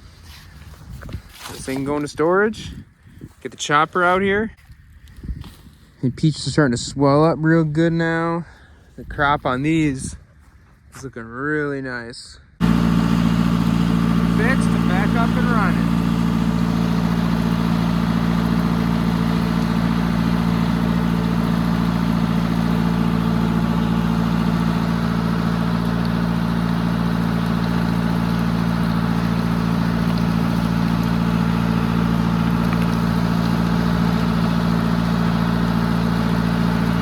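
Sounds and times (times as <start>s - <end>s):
tractor engine running: 12.6s - 37.0s.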